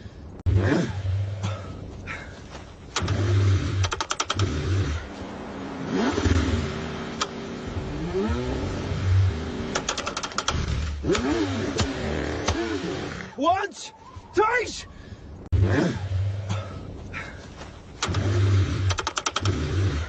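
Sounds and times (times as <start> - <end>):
rapid clicks: 2.9 - 4.6, 9.7 - 12.6, 18.0 - 19.8
car engine cranking: 2.9 - 5.2, 5.8 - 13.3, 17.9 - 20.0.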